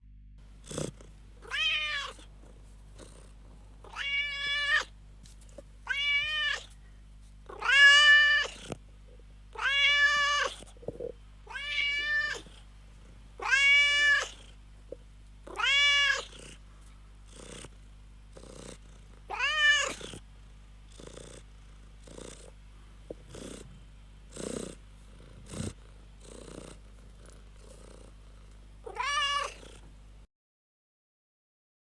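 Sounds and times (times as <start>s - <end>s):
cat meowing: 1.4s - 2.3s, 3.8s - 5.0s, 5.8s - 6.8s, 7.5s - 8.8s, 9.5s - 10.6s, 11.4s - 12.6s, 13.4s - 14.5s, 15.5s - 16.5s, 19.3s - 20.2s, 28.8s - 29.8s.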